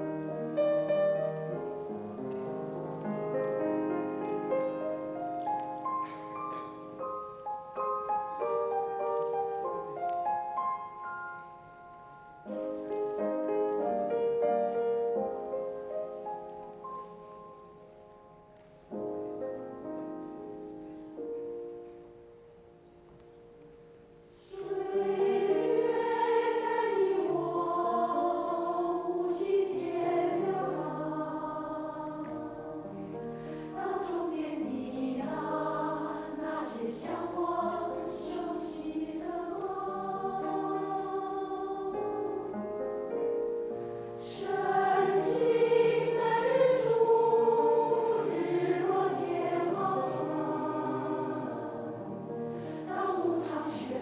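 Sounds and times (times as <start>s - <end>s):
choir singing: 24.2s - 42.6s, 44.2s - 54.0s.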